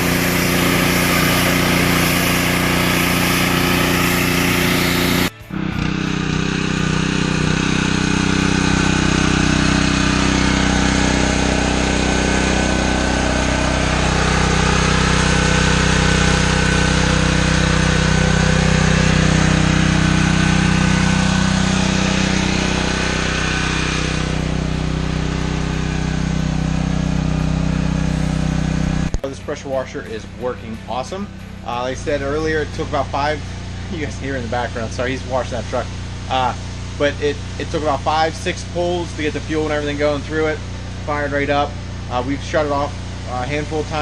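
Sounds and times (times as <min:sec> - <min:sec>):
pressure washer spray hiss: 0:00.0 - 0:05.3
small gas engine running: 0:00.0 - 0:44.0.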